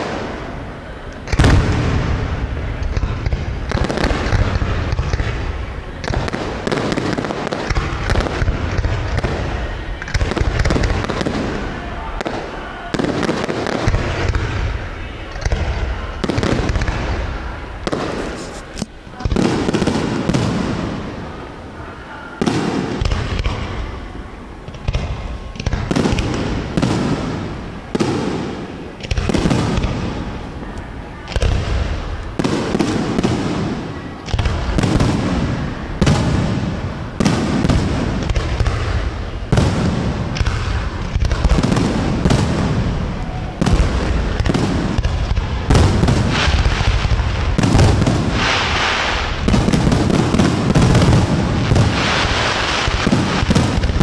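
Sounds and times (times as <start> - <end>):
fireworks shells bursting: 44.4 - 54.0.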